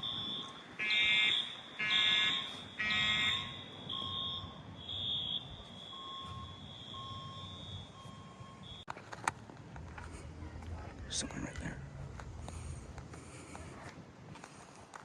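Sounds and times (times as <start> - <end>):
buzzy fire alarm horn blasts: 0.0 - 8.8
faint steady alarm tones: 0.0 - 8.9.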